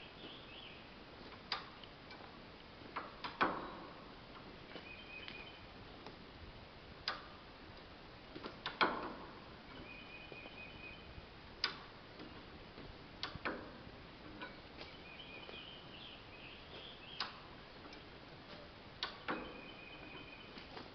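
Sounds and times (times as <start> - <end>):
low background hiss: 0.0 - 20.9
sharp clicks and knocks: 1.2 - 5.4, 7.0 - 9.9, 11.6 - 15.6, 16.7 - 20.9.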